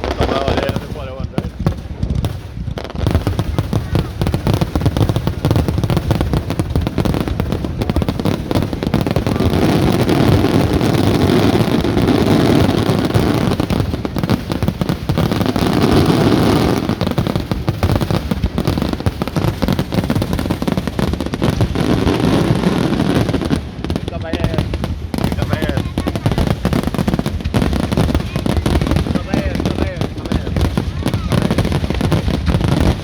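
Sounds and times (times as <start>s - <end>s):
fireworks bangs and crackles: 0.0s - 33.0s.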